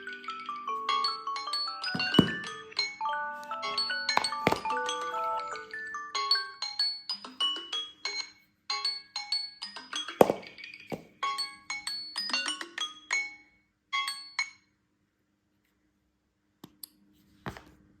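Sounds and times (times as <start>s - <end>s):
thump: 2.0s - 2.5s, 10.2s - 11.1s
sharp knock: 10.2s - 11.1s.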